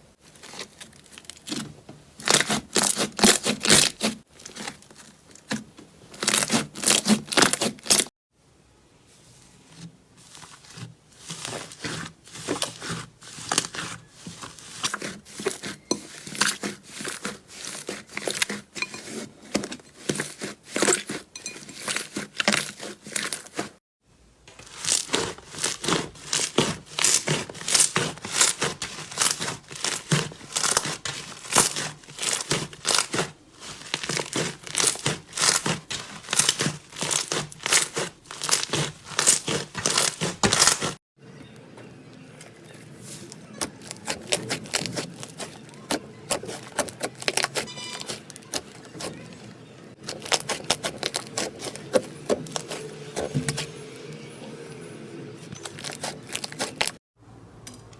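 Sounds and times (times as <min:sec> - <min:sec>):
slime crackling and popping: 0:00.3 - 0:08.1, 0:24.6 - 0:41.0, 0:43.0 - 0:49.0, 0:50.0 - 0:53.7, 0:55.6 - 0:57.0.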